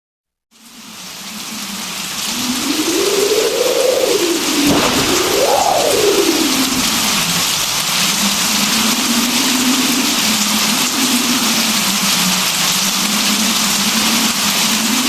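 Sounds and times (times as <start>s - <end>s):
heavy rain hiss: 0.6s - 15.0s
low wavering hum: 4.6s - 8.8s.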